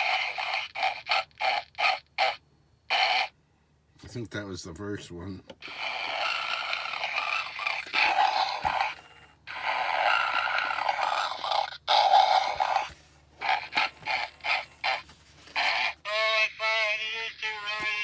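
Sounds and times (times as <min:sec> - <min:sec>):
toy speaker breath-like sounds: 0:00.0 - 0:03.3, 0:05.6 - 0:18.0.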